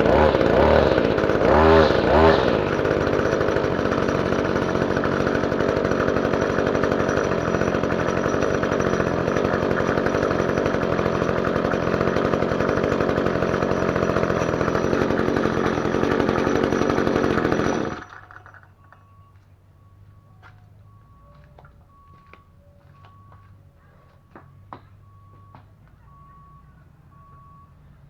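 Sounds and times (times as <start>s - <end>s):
string trimmer engine running: 0.0s - 18.7s.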